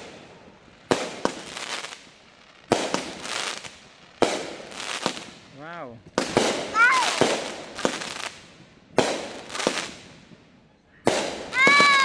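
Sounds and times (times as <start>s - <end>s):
fireworks bangs: 0.0s - 12.0s
small firework pops: 6.0s - 12.0s.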